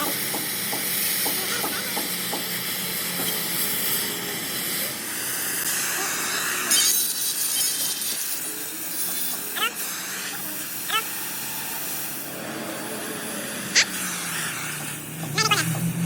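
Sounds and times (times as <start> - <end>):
arc welding crackling hiss: 0.0 - 12.5, 13.5 - 16.0.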